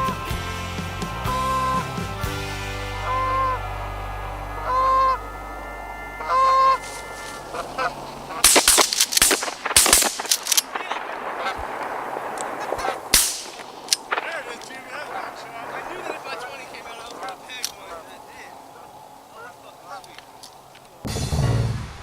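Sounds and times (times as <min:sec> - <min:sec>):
geese honking: 0:00.0 - 0:21.8
loud sharp cracks: 0:08.3 - 0:17.9.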